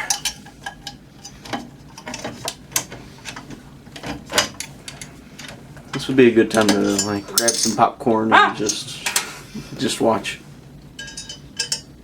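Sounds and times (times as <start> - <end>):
metal parts and tools clinking: 0.0 - 2.5, 3.3 - 7.9, 11.0 - 11.9.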